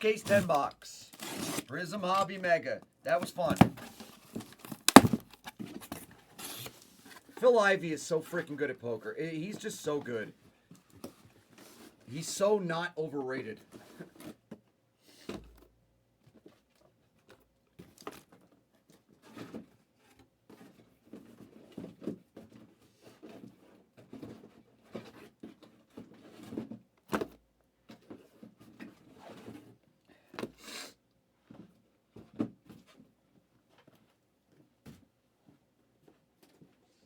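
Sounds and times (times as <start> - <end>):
cardboard rustling and sliding: 0.2 - 1.6, 3.2 - 7.4
cardboard knocking on table: 4.8 - 5.2.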